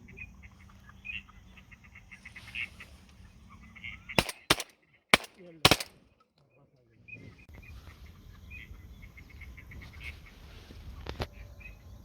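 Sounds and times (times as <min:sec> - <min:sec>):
shotgun shots: 0:04.2 - 0:05.9.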